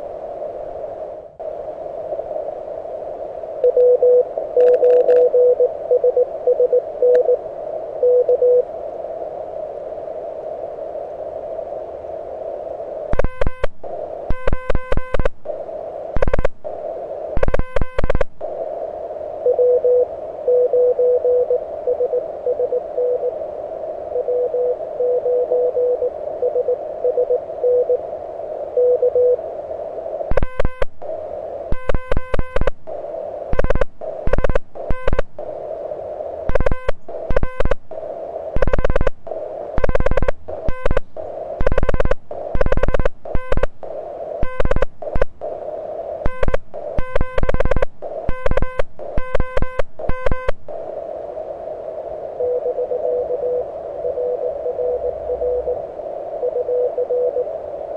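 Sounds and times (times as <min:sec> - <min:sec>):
receiver hiss: 0:00.0 - 0:57.9
buzzy morse code sidetone: 0:03.6 - 0:07.4, 0:08.0 - 0:08.6, 0:13.1 - 0:15.6, 0:16.2 - 0:16.8, 0:17.4 - 0:18.6, 0:19.4 - 0:23.3, 0:24.2 - 0:28.0, 0:30.3 - 0:35.6, 0:36.5 - 0:45.6, 0:46.2 - 0:50.8
faint morse code: 0:03.6 - 0:07.4, 0:08.0 - 0:08.7, 0:13.1 - 0:18.7, 0:19.4 - 0:23.4, 0:24.0 - 0:28.1, 0:28.7 - 0:29.5, 0:30.3 - 0:35.6, 0:36.5 - 0:50.9, 0:52.3 - 0:57.7.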